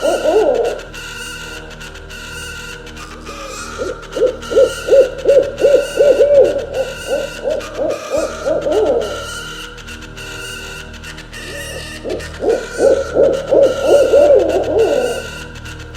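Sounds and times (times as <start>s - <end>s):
owl hooting: 0.0s - 0.9s, 3.4s - 9.5s, 11.5s - 15.5s
soft background music: 0.0s - 15.9s.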